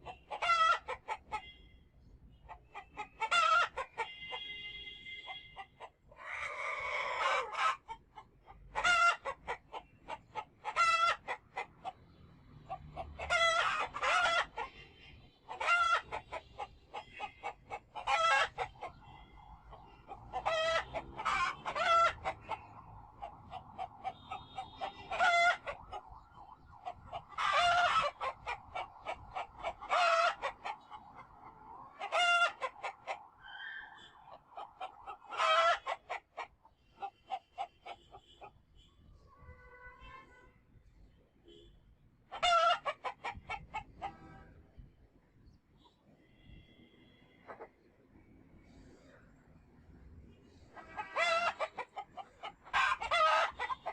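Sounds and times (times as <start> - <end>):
faint fowl calling: 12.7 - 38.6
fowl calling: 15.5 - 38.5.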